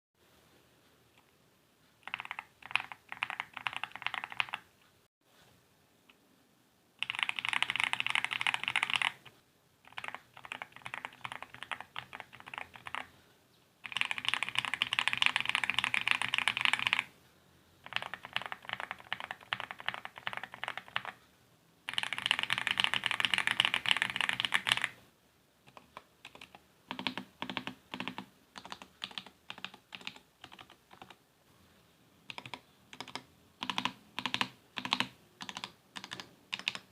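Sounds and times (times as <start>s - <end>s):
mechanical keyboard typing: 2.0s - 4.7s, 7.0s - 9.3s, 9.9s - 13.1s, 13.8s - 17.1s, 17.8s - 21.2s, 21.9s - 25.0s, 25.7s - 31.2s, 32.3s - 36.9s.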